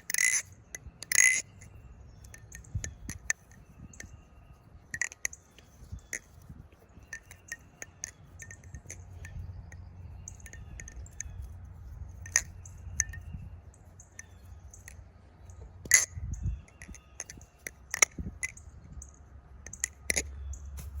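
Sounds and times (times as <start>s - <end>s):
butterfly knife clicking: 0.0s - 4.2s, 7.1s - 11.4s, 12.2s - 13.3s, 14.0s - 19.1s.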